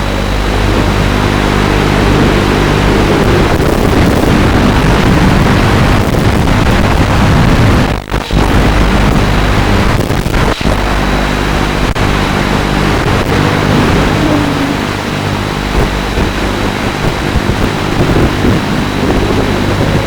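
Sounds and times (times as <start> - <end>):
drone motors buzzing: 0.0 - 20.0
wind on microphone: 0.0 - 20.0.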